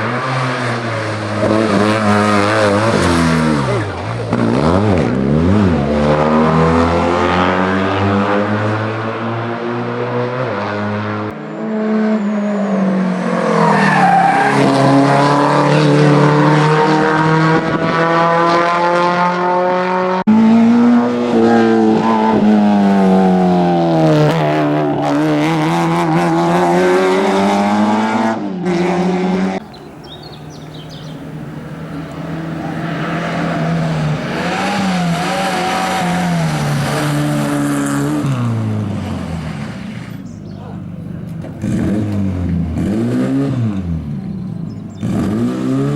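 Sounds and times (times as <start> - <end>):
rally car engines revving: 0.0 - 45.9.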